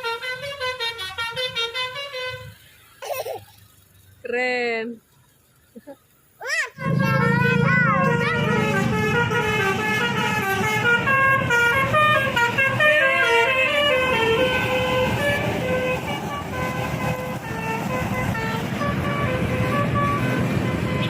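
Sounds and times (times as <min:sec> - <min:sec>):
multi-tone bus horn tune: 0:00.0 - 0:02.6, 0:06.8 - 0:21.0
low bus engine running: 0:06.8 - 0:21.0.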